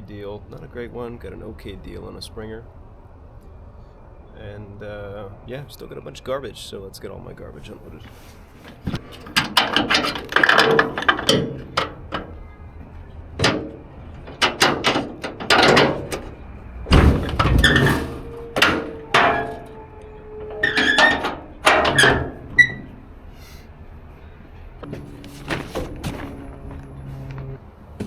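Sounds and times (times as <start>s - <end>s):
metal parts clanking: 8.2s - 23.1s, 24.7s - 27.5s.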